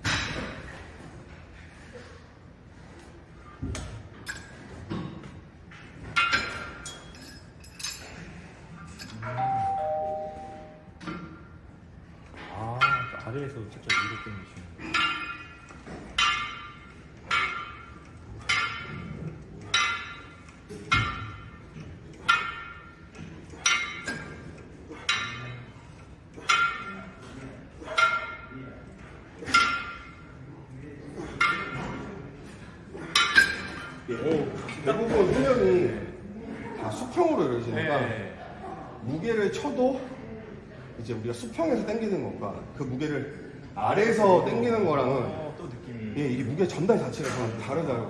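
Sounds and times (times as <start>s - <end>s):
metal gym equipment clanking: 3.7s - 30.4s, 31.2s - 35.5s
metal weights clinking: 5.8s - 8.2s, 12.4s - 30.3s, 31.2s - 34.1s
ringing tone: 9.2s - 11.0s.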